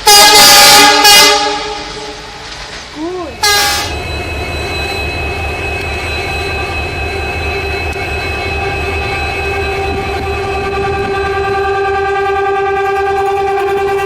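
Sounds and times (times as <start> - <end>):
locomotive whine: 0.0 - 14.0
low rhythmic engine throb: 3.4 - 14.0.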